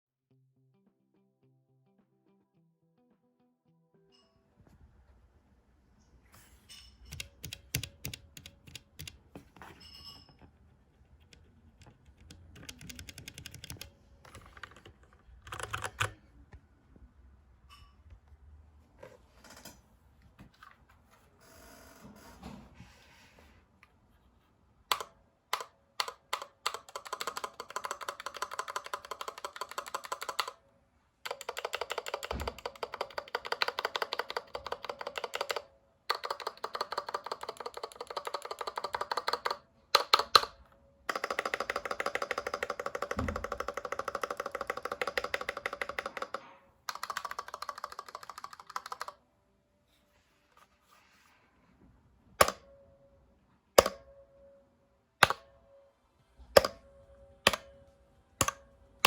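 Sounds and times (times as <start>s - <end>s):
mechanical keyboard typing: 7.0s - 9.7s, 10.4s - 16.2s, 24.9s - 30.6s, 31.2s - 49.2s, 52.4s - 52.7s, 53.8s - 54.1s, 55.2s - 55.5s, 56.5s - 56.8s, 57.4s - 57.7s, 58.4s - 58.6s.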